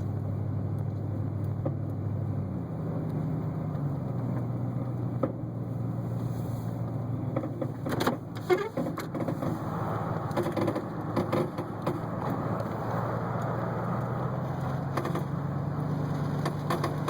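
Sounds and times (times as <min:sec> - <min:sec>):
truck engine droning: 0:00.0 - 0:17.0.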